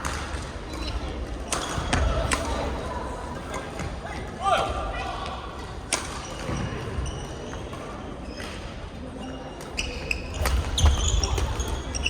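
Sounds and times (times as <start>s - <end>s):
shoe squeaks on court floor: 9.3s - 12.0s.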